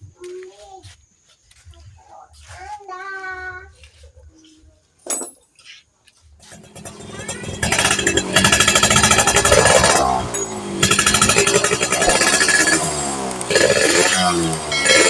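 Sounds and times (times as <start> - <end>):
motorcycle engine revving: 6.4 - 15.0.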